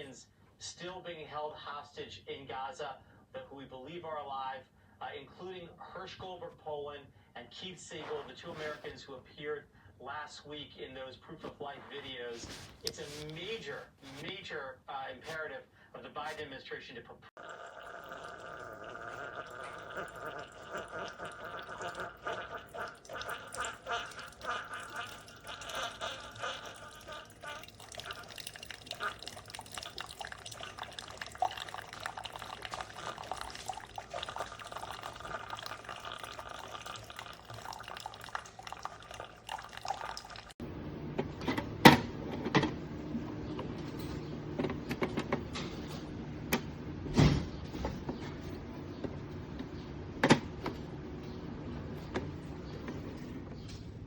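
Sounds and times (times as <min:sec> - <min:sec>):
coffee maker brewing: 0:08.1 - 0:09.2, 0:11.3 - 0:14.5, 0:17.4 - 0:54.0
coffee gurgling into cup: 0:08.4 - 0:08.9, 0:12.0 - 0:14.4, 0:17.4 - 0:40.6.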